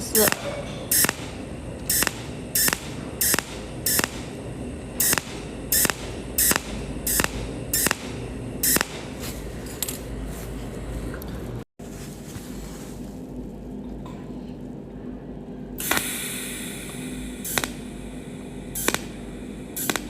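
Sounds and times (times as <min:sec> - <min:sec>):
welding machine zaps: 0:00.0 - 0:10.3, 0:15.8 - 0:20.0
steady low hiss: 0:00.0 - 0:13.4.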